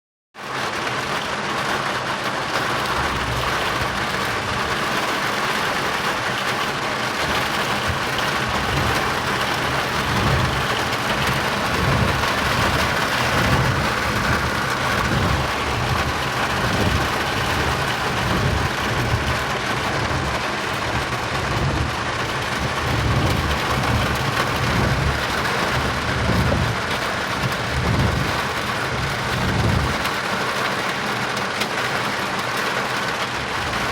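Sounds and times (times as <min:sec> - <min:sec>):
heavy rain falling: 0:00.4 - 0:33.9
low rumbles: 0:07.2 - 0:30.1.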